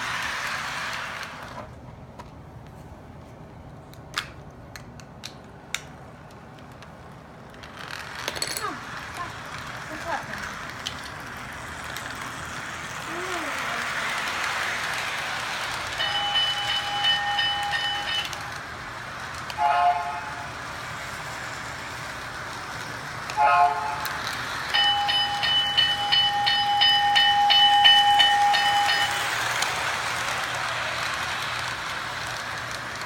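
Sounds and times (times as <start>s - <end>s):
toy train running on track: 0.0s - 1.7s, 7.1s - 33.0s
ringing bell: 16.0s - 18.4s, 24.8s - 29.3s.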